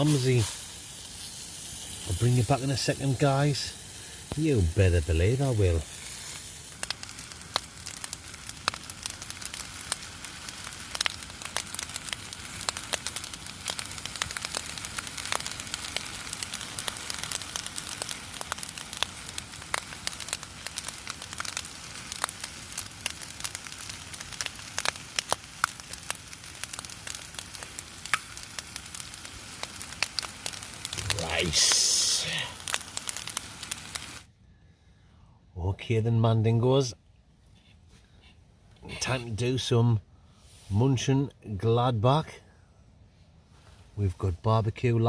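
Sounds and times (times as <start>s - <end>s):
rice sizzling in oil: 0.0s - 34.3s.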